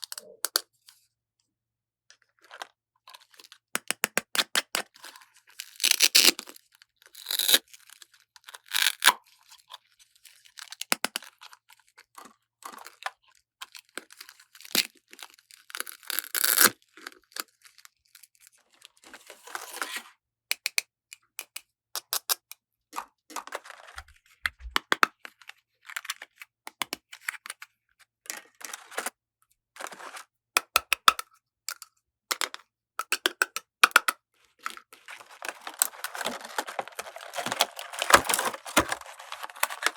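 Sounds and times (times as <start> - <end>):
plastic wrap rustling and tearing: 35.0 - 39.9.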